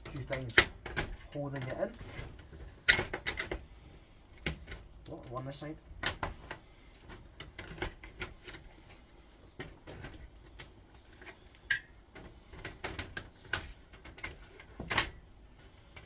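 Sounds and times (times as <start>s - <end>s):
tools and parts clicking: 9.6s - 15.2s.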